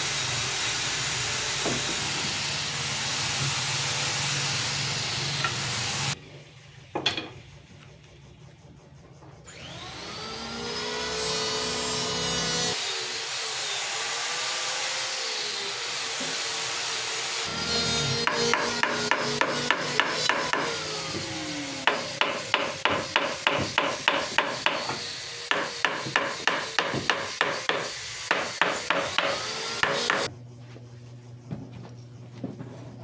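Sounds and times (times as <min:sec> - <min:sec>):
electric power tool cutting wood: 0:00.0 - 0:06.2, 0:09.5 - 0:30.3
knocks: 0:18.2 - 0:30.3.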